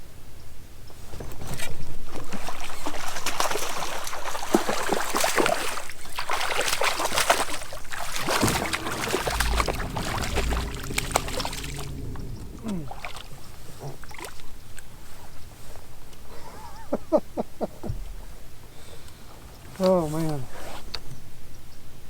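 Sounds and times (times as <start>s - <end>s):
water splashing and sloshing: 2.3s - 14.4s
crackling and rustling: 8.2s - 13.6s.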